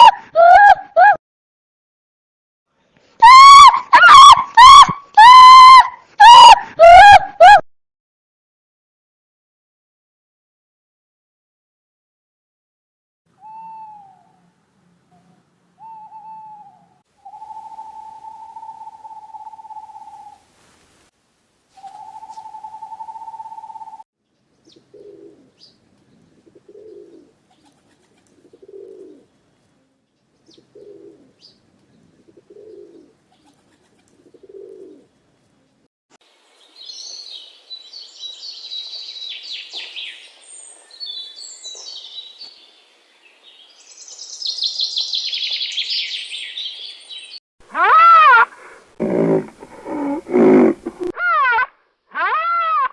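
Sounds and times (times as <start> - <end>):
owl-like hoots: 15.8 - 20.4, 21.8 - 24.0, 49.0 - 51.1
dove cooing: 21.8 - 24.0, 24.7 - 25.6, 26.4 - 31.4, 32.2 - 35.1, 49.0 - 51.1.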